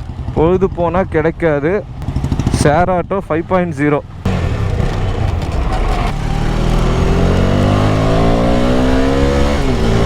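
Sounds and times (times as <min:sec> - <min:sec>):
road and wind noise: 0:00.0 - 0:10.0
motorcycle engine accelerating: 0:01.9 - 0:02.9, 0:04.1 - 0:10.0.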